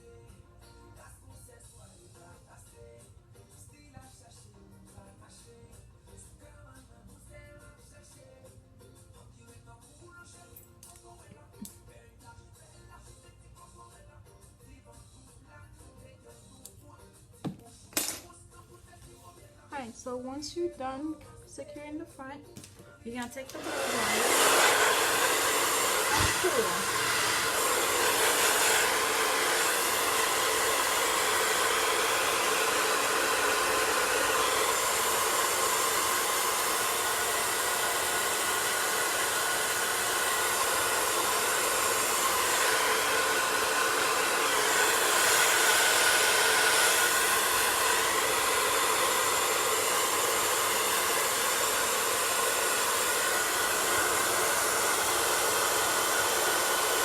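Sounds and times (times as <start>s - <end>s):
blow dryer hissing: 23.3s - 57.0s.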